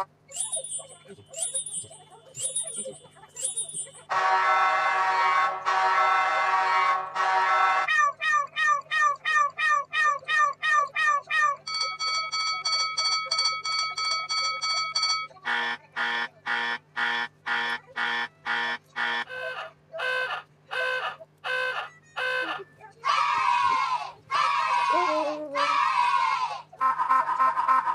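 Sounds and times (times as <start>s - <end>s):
loud beeps: 0.0s - 4.1s
rapid electronic beeping: 0.0s - 4.1s
short falling electronic chirps: 0.3s - 4.0s.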